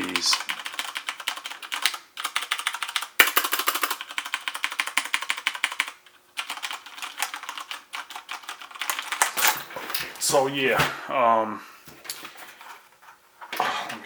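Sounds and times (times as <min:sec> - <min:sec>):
rapid mechanical keyboard typing: 0:00.0 - 0:09.4.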